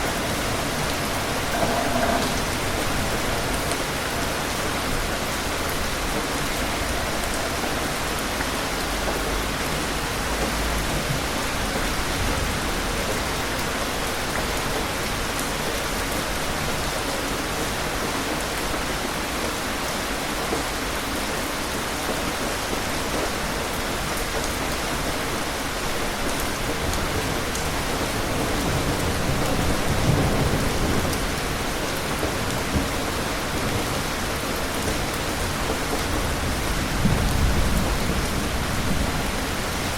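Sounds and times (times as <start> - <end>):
distant thunder rumbling: 0.0 - 8.0
heavy rain falling: 0.0 - 39.9.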